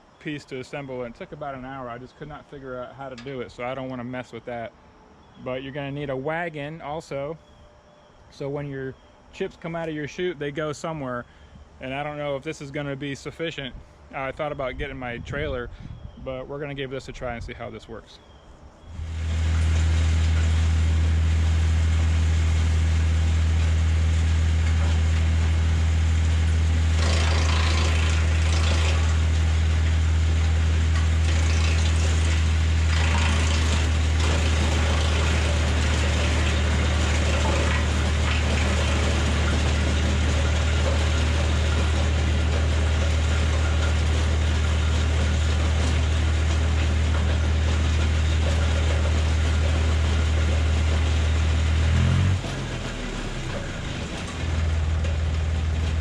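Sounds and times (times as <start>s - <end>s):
tractor engine idling: 18.9s - 56.0s
wood chipper crunching branches: 18.9s - 56.0s.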